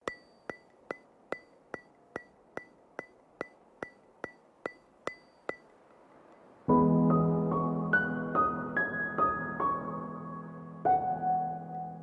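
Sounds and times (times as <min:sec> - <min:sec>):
ticking with bright ring: 0:00.0 - 0:06.6.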